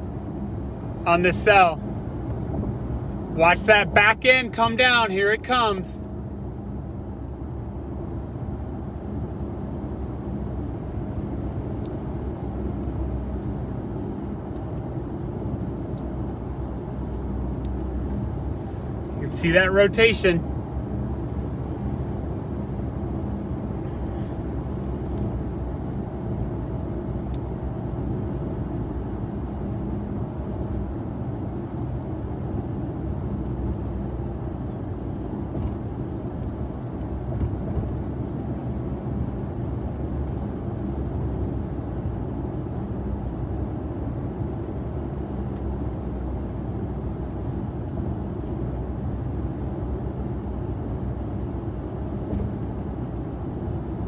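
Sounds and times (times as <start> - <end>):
engine and road noise in cabin: 0.0 - 54.0.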